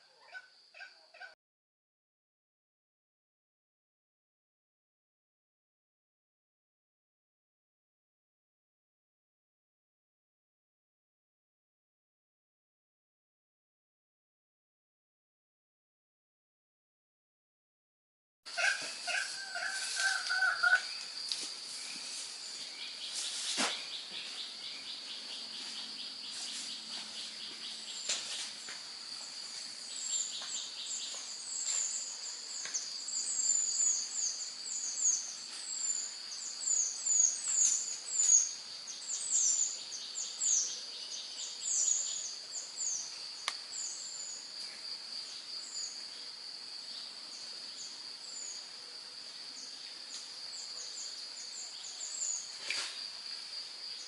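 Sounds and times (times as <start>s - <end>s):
insects droning: 18.5s - 54.0s
small bird chirping: 29.9s - 46.1s.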